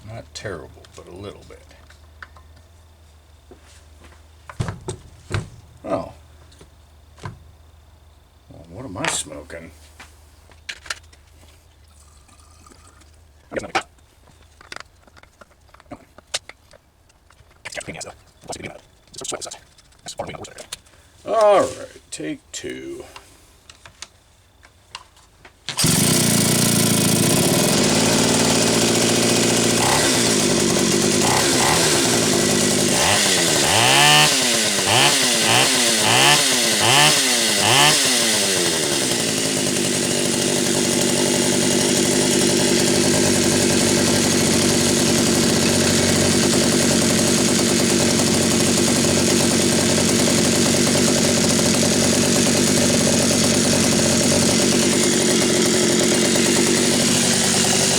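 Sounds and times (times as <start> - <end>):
chainsaw running: 25.7 - 57.9
chainsaw throttle blips: 25.7 - 57.9.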